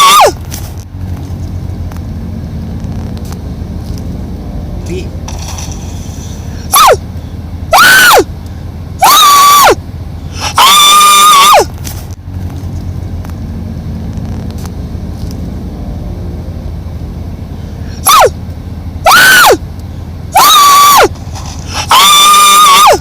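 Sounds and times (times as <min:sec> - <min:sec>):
pet crying high-pitched: 0:21.8 - 0:23.0.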